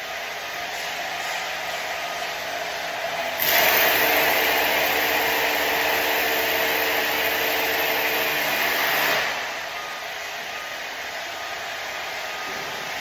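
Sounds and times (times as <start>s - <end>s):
drill drilling into concrete: 3.3s - 9.4s.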